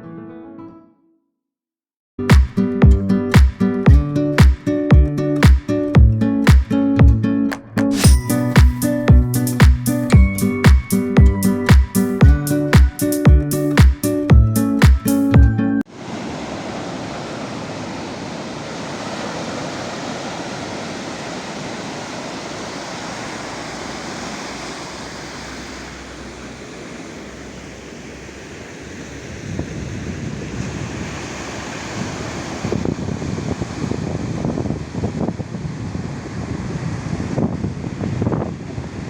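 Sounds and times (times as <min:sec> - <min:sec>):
sea waves washing onto shore: 0:15.9 - 0:39.0
wind buffeting microphone: 0:16.0 - 0:39.0.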